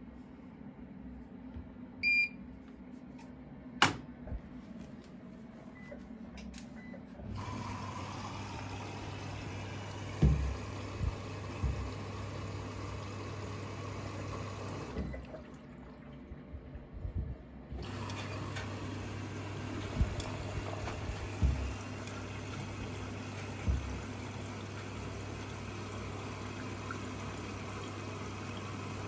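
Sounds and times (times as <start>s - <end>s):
washing machine click: 3.8s - 4.1s, 17.8s - 25.7s
water inlet valve humming: 7.2s - 29.0s
water rushing into drum: 7.3s - 16.7s, 17.8s - 29.0s
dull thumps: 10.1s - 12.2s, 19.9s - 21.9s, 23.6s - 24.2s.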